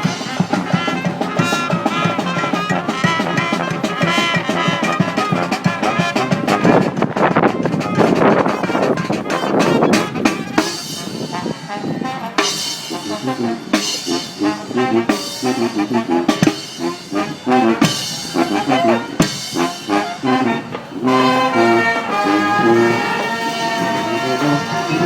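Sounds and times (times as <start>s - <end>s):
steady drumbeat: 0.0s - 11.7s, 12.3s - 25.0s
brass band playing: 0.0s - 25.0s.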